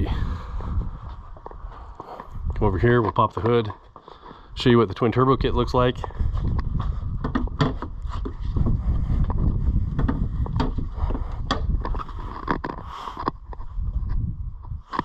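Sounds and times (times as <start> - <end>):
wind buffeting microphone: 0.0 - 3.6, 4.3 - 15.0
sharp clicks and knocks: 6.5 - 8.4, 9.9 - 13.6.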